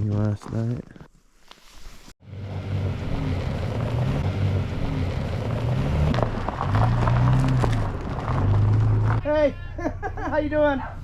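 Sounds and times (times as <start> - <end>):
road and wind noise: 2.0 - 9.5
car engine hum: 2.2 - 9.2.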